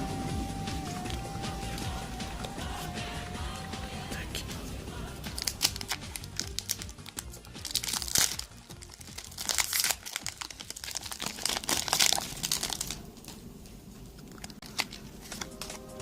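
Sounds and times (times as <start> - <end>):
foil wrapper crinkling: 5.3 - 13.4, 14.2 - 16.0.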